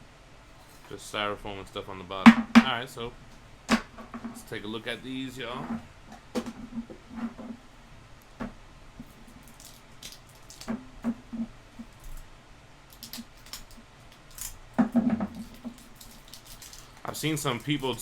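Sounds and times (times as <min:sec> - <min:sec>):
plastic wrapping crinkling: 0:09.0 - 0:10.9, 0:12.9 - 0:18.0.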